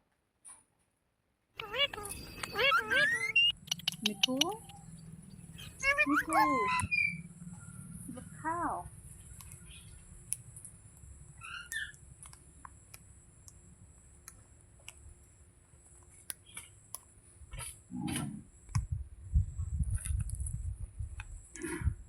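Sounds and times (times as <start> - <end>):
sharp clicks: 1.6 - 6.9, 11.7 - 13.6
parrot chirping softly: 1.6 - 14.4.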